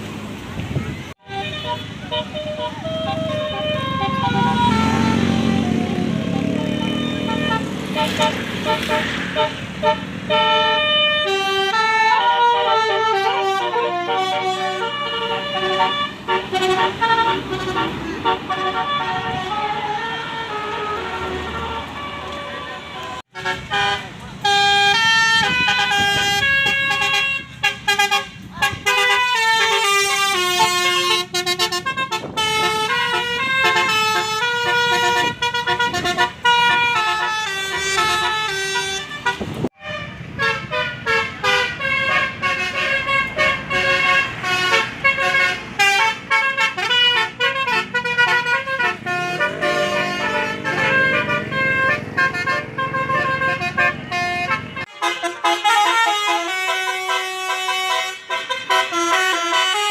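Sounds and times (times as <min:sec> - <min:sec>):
multi-tone bus horn melodies: 0:00.7 - 0:59.9.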